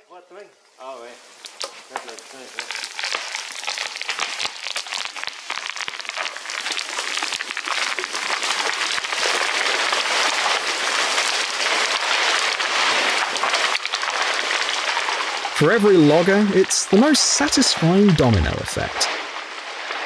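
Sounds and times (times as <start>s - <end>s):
branches snapping and crackling: 1.4s - 15.6s.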